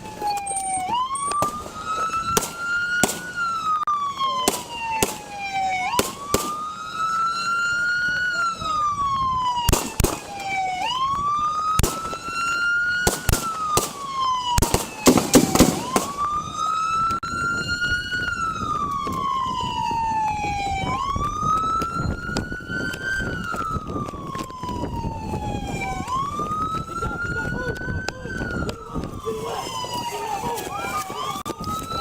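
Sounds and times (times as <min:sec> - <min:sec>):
police siren wailing: 0:00.0 - 0:32.0
gunshots: 0:04.4 - 0:05.3, 0:06.0 - 0:06.6, 0:09.7 - 0:10.3, 0:13.0 - 0:14.0, 0:14.6 - 0:16.2.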